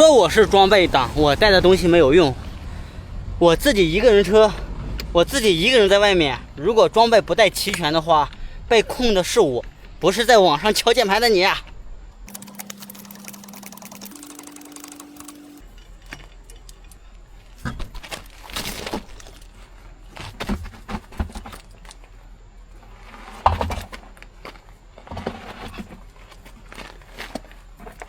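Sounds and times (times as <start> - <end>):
tools and metal parts clinking: 12.3 - 17.2.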